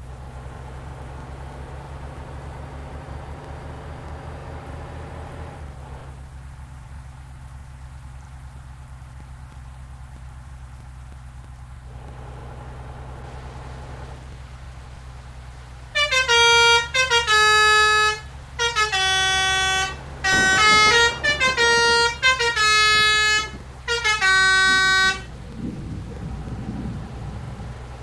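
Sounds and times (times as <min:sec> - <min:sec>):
low steady rumble: 0:00.0 - 0:28.0
musical bus horn playing a tune: 0:15.9 - 0:25.4.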